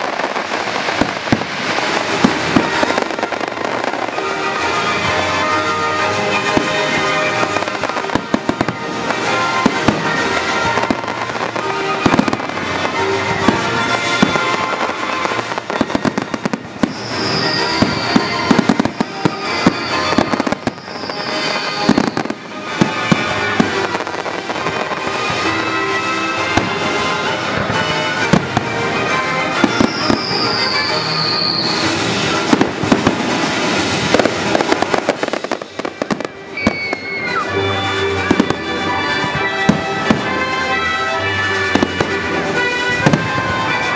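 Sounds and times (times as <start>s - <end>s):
fireworks banging and crackling: 0.0s - 43.9s
music playing: 0.0s - 43.9s
falling firework whistles: 15.6s - 25.7s, 29.6s - 38.7s.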